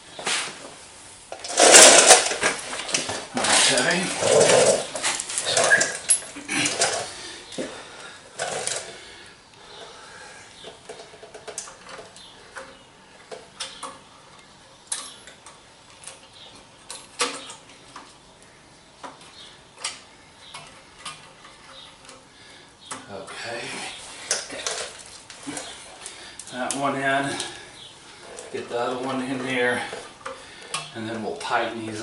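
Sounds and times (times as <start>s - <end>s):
small metal clicks and knocks: 10.6s - 18.2s, 19.0s - 23.1s, 29.3s - 31.6s.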